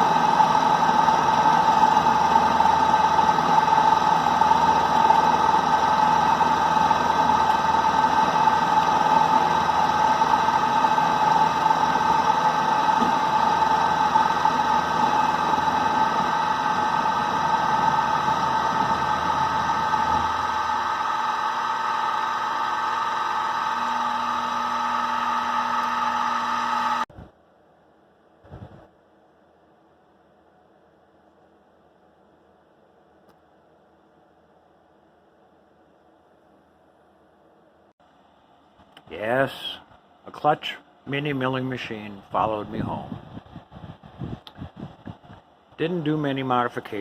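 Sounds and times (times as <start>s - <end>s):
high machine whine: 0.0s - 27.1s
milling machine motor humming: 0.0s - 27.1s.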